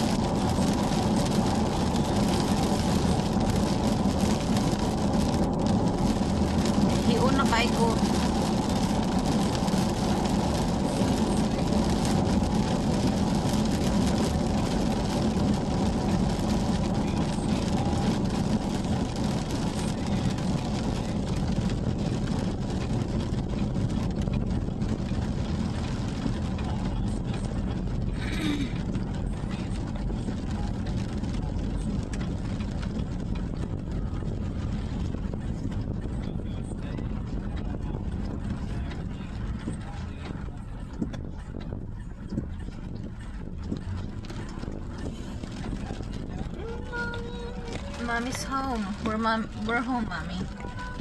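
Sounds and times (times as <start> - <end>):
low engine hum: 0.0 - 51.0
tyres on wet road: 0.0 - 51.0.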